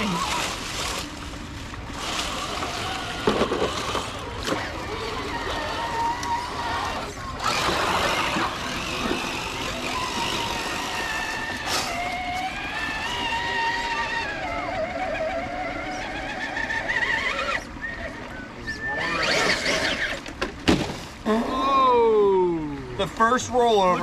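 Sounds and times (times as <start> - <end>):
electric motor and gear whining: 0.0 - 20.6.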